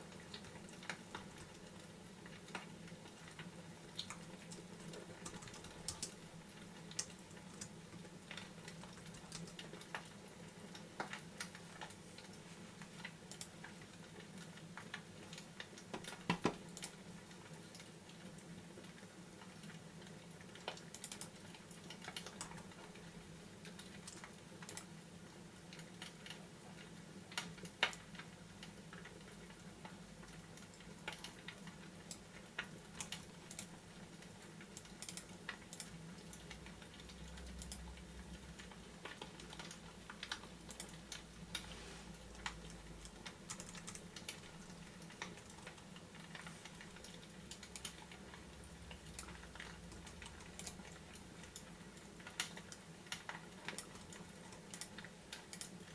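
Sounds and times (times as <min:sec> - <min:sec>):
fireplace crackling: 0:38.3 - 0:55.9.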